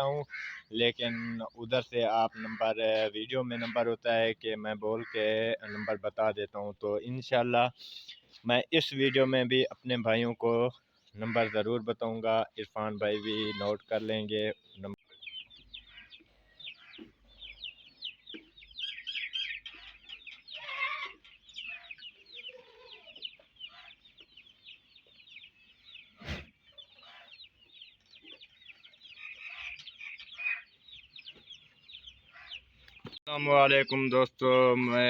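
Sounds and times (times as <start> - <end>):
chickens clucking: 0.0 - 7.0, 10.5 - 34.2.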